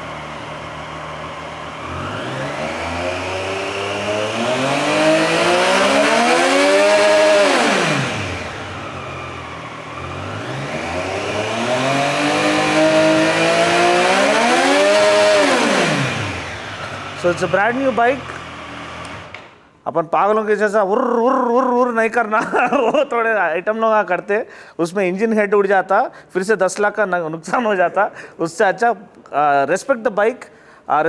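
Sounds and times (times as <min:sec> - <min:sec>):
motorcycle engine idling and revving: 0:00.0 - 0:19.6.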